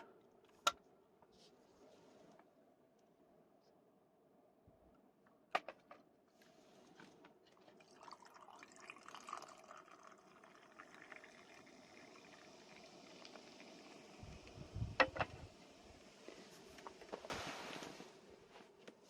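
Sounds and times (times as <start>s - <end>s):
liquid trickling: 6.7s - 17.0s.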